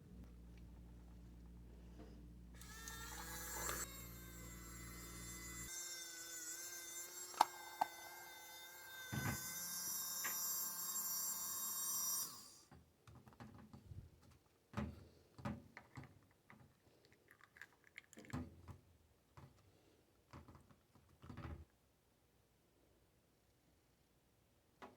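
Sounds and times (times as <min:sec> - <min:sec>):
small electric motor whining: 0:02.6 - 0:12.7.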